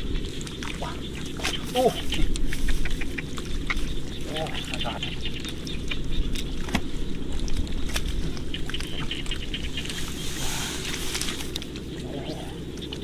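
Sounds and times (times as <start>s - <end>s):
splashing in shallow water: 0.2s - 6.8s.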